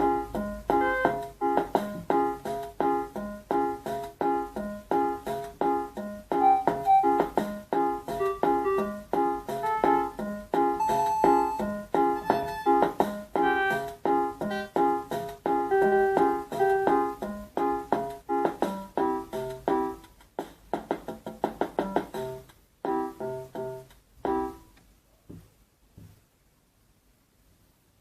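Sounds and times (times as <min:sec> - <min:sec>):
electronic keyboard playing chords: 0:00.0 - 0:20.1, 0:20.9 - 0:24.7
faint taps: 0:19.4 - 0:22.6, 0:24.7 - 0:26.3.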